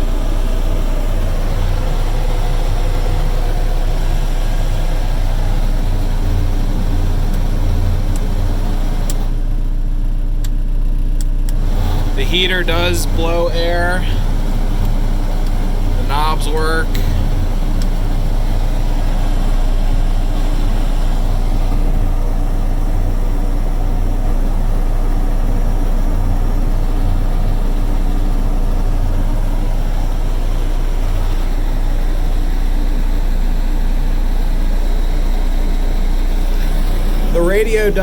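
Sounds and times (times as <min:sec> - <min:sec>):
excavator engine droning: 0:00.0 - 0:38.0
heater fan blowing: 0:11.6 - 0:33.5.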